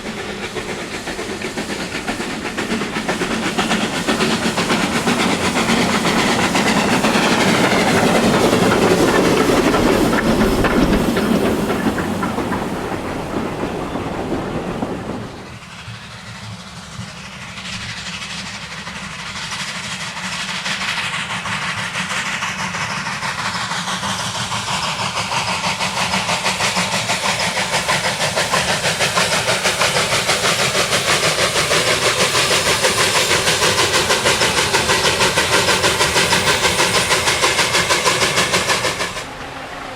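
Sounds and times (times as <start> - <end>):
train clickety-clack on track: 0.0 - 39.9
train hiss: 0.0 - 39.9.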